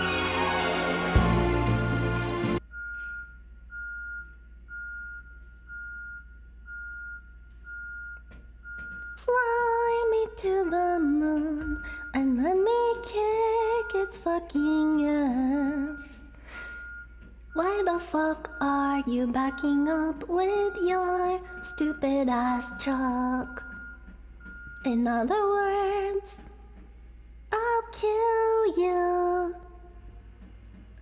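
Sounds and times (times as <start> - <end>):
truck reversing alarm beeping: 0.9 - 26.1
woman singing: 9.2 - 16.2, 17.6 - 23.8, 24.8 - 26.5, 27.5 - 29.8.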